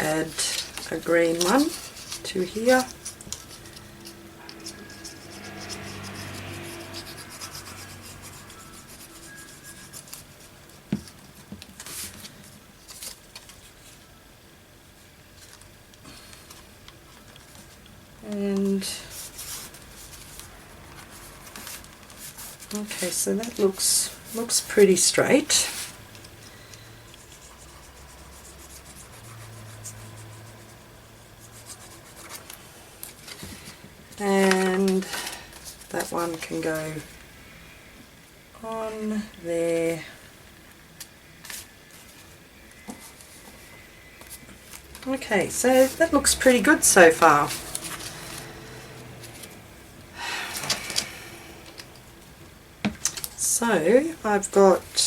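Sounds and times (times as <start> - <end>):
paper rustling and rubbing: 0.0 - 14.0, 18.9 - 37.1, 41.4 - 49.6
faint low hum: 0.0 - 55.0
paper being rubbed by hand: 0.1 - 10.6.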